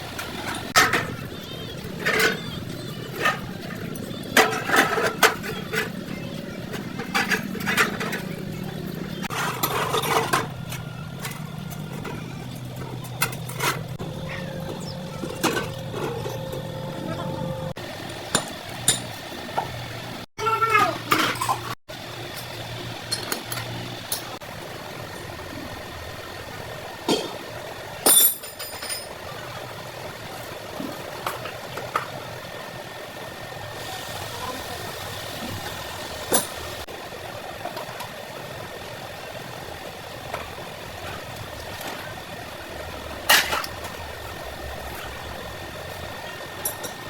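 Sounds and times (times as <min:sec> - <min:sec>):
metal parts and tools clinking: 0:28.0 - 0:29.2.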